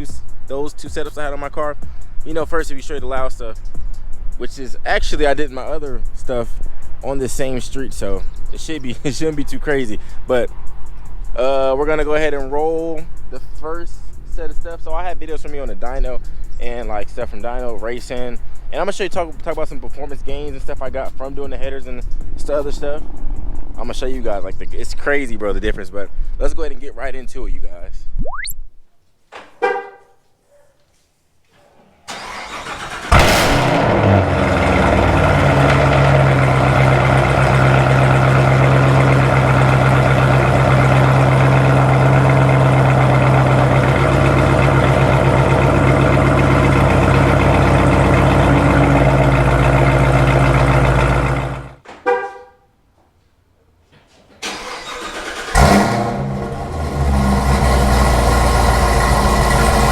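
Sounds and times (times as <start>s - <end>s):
car engine starting and idling: 32.1s - 51.8s, 54.4s - 59.9s.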